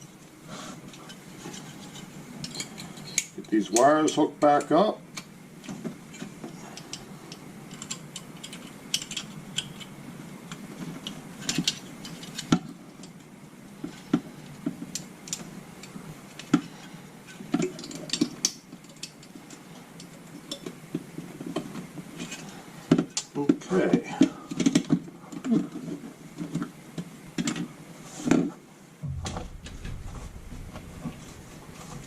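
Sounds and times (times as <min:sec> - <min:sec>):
wires rustling: 0:29.0 - 0:32.0.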